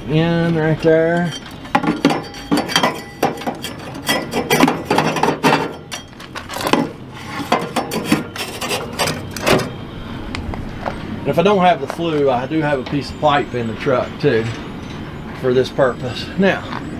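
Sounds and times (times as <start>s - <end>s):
metal flue scraping and knocking: 0.0s - 9.9s.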